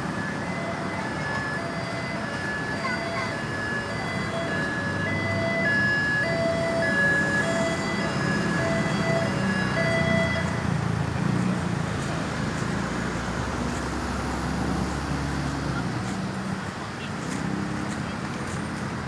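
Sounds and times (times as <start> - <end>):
electronic siren: 0.0 - 10.8
traffic and engine noise: 0.0 - 19.0.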